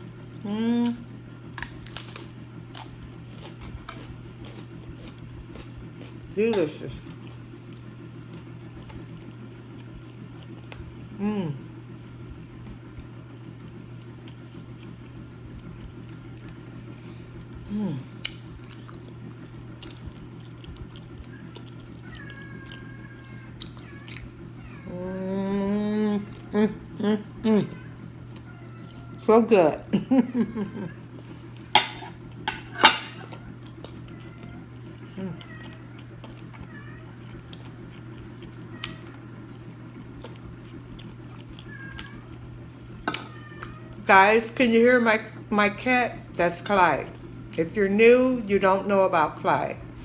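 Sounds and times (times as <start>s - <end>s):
steady low hum: 0.0s - 50.0s
person humming mmm: 0.4s - 1.0s, 11.1s - 11.7s, 17.6s - 18.3s, 24.9s - 27.8s, 35.1s - 35.5s
chewing crunchy food: 0.8s - 11.2s, 12.5s - 24.9s, 30.6s - 44.0s
cat meowing: 22.0s - 25.0s, 36.6s - 37.3s, 41.5s - 42.4s, 43.1s - 44.0s.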